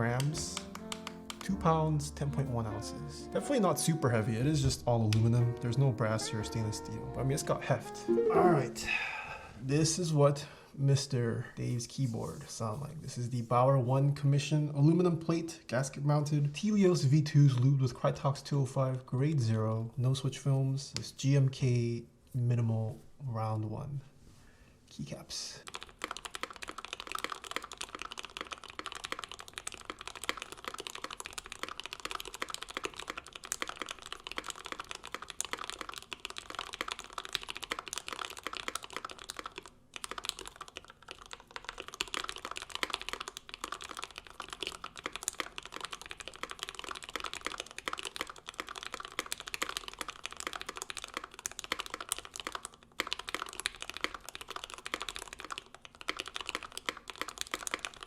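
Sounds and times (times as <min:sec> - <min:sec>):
fast typing on mechanical keyboard: 0:00.0 - 0:01.6, 0:25.6 - 0:58.0.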